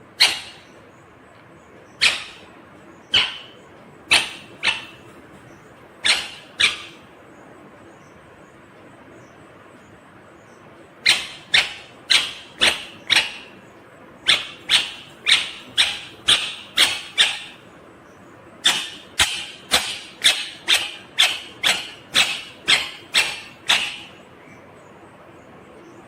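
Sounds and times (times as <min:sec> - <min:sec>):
parakeet screeching: 0:00.2 - 0:00.8, 0:01.9 - 0:05.2, 0:06.0 - 0:07.1, 0:11.0 - 0:13.6, 0:14.2 - 0:17.7, 0:18.6 - 0:24.2.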